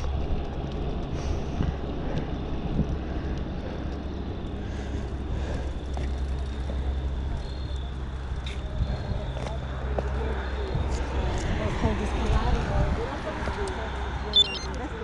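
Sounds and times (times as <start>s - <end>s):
wind rushing on microphone: 0.0s - 3.8s, 10.7s - 13.7s.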